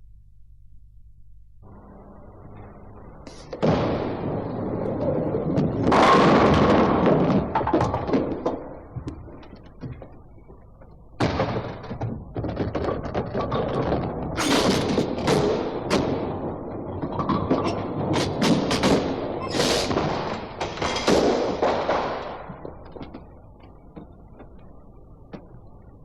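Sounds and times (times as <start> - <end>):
bowling balls rolling: 1.6 - 26.0
bowling pins crashing: 3.3 - 10.2, 11.2 - 23.3
bowling ball thud: 3.5 - 10.2.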